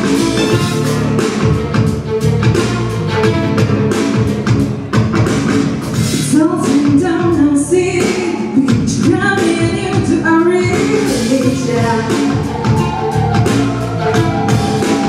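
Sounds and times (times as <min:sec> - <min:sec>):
steady percussive beat: 0:00.0 - 0:07.5, 0:08.8 - 0:15.0
instrumental accompaniment: 0:00.0 - 0:15.0
woman singing: 0:06.3 - 0:12.6.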